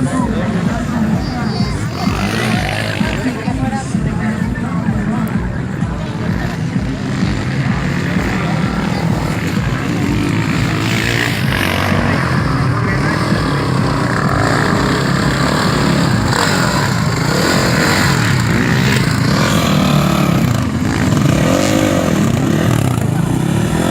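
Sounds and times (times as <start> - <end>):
dirt bike engines revving: 0.0 - 23.9
voices: 0.0 - 23.9.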